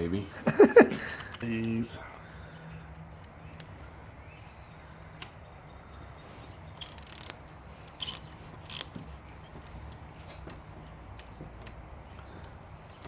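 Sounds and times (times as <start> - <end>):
ratchet wrench clicking: 6.8 - 8.9.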